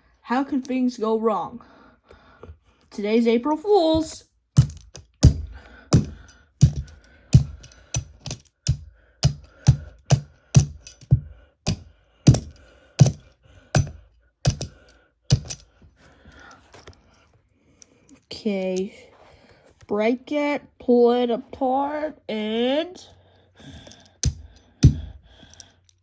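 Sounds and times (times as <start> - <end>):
hammer striking plastic cube: 4.6 - 15.6, 24.2 - 25.2.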